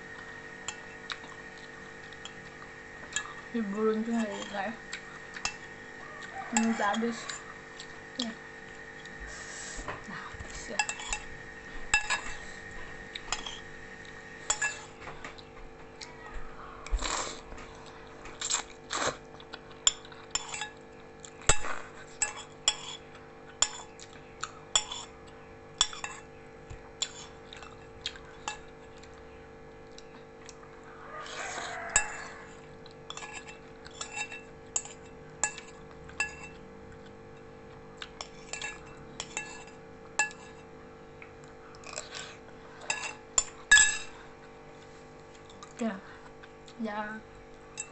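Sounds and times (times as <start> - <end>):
faint steady hum: 0.0 - 47.9
utensils clinking against a bowl: 0.6 - 9.2, 10.5 - 13.7, 14.4 - 16.0, 19.7 - 26.4, 27.0 - 29.2, 31.6 - 40.7, 41.7 - 44.3.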